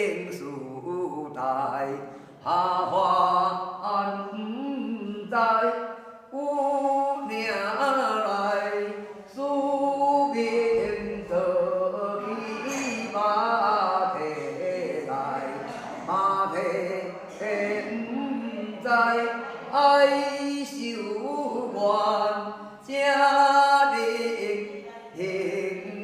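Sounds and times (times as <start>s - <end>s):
person singing a wavering chant: 0.0s - 26.0s.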